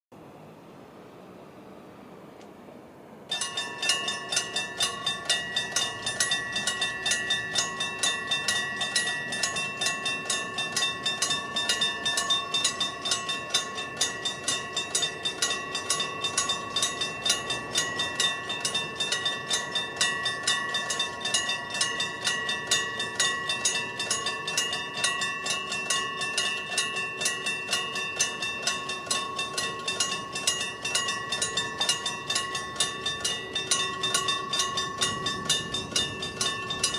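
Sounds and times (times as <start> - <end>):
level crossing bells ringing: 3.3 - 36.9.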